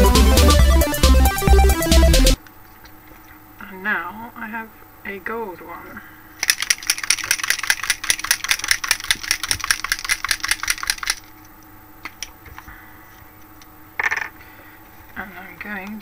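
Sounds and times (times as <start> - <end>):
paint marker ball rattling: 6.4 - 11.3.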